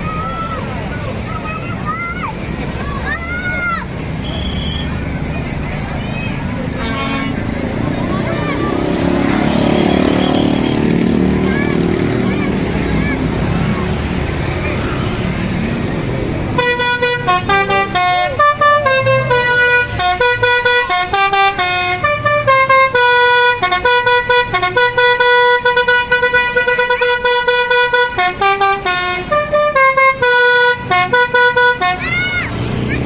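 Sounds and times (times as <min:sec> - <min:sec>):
bus multi-tone horn melody: 0:04.2 - 0:05.0, 0:06.7 - 0:12.2, 0:16.4 - 0:32.7.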